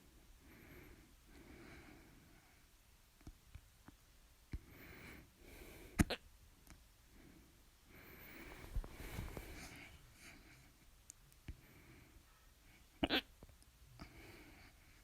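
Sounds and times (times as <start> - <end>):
soft breathing: 0.0 - 2.8, 4.5 - 6.2, 7.0 - 13.0, 13.9 - 15.0
person hiccuping: 13.0 - 13.3.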